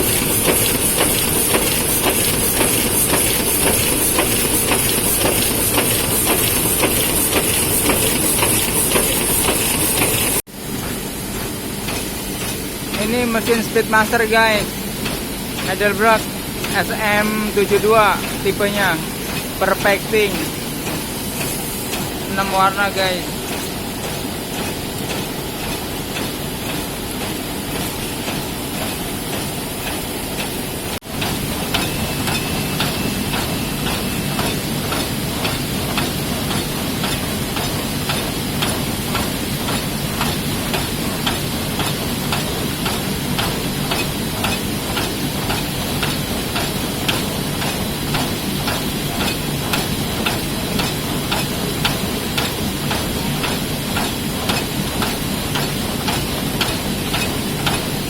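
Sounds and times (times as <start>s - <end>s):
rapid mechanical clicks: 0.0s - 13.9s, 31.1s - 58.0s
printing press running: 0.0s - 58.0s.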